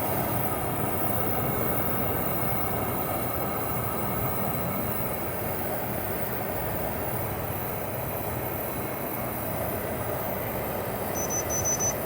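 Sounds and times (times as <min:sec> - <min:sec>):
dehumidifier fan running: 0:00.0 - 0:12.0
short high electronic beeps: 0:11.2 - 0:12.0.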